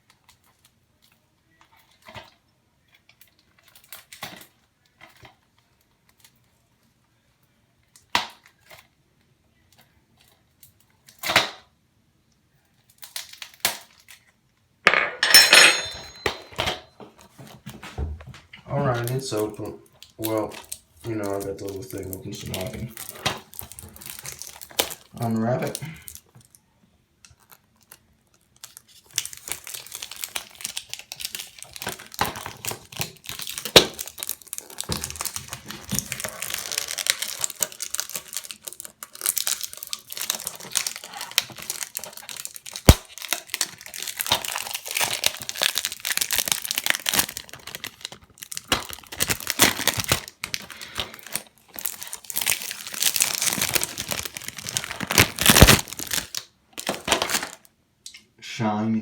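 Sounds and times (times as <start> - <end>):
plastic wrap crinkling: 12.8 - 14.3, 18.7 - 26.6, 27.2 - 57.8
plastic wrap snapping: 12.9 - 14.3, 18.9 - 26.6, 27.2 - 57.7.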